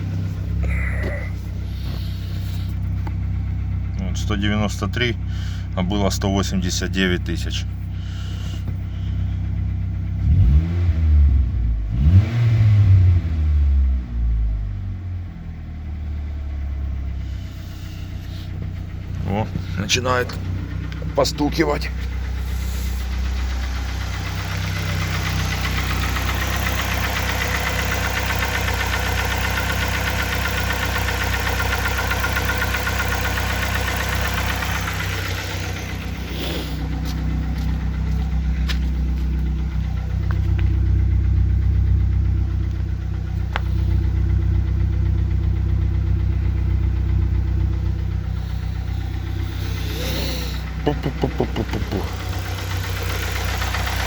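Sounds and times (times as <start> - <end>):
car engine idling: 0.0 - 54.0
light engine knock: 50.9 - 54.0.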